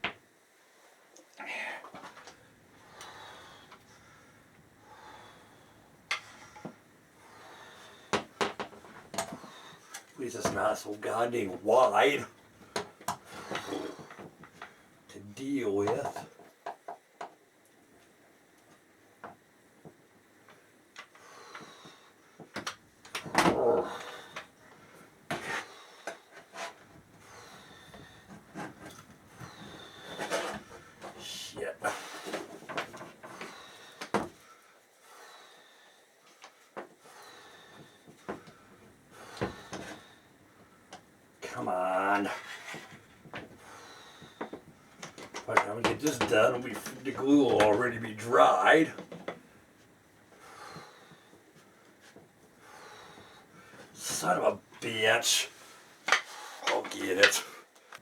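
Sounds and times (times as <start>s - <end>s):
breathing: 0.7s - 10.1s, 12.5s - 15.0s, 20.5s - 22.6s, 23.9s - 41.1s, 42.3s - 45.4s, 50.3s - 54.0s, 55.5s - 56.7s
knocks taps and scrapes of parts: 6.1s - 6.8s, 8.1s - 10.6s, 12.7s - 14.8s, 15.8s - 17.4s, 18.0s - 24.5s, 25.3s - 31.2s, 32.1s - 34.4s, 37.7s - 41.1s, 42.2s - 43.6s, 44.2s - 47.9s, 49.0s - 49.4s, 56.0s - 58.0s.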